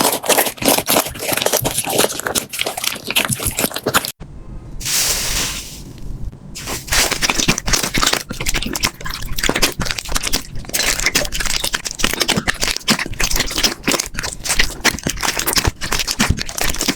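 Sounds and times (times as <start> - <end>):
short hiss: 4.8 - 6.0
slime crackling and popping: 6.6 - 16.9.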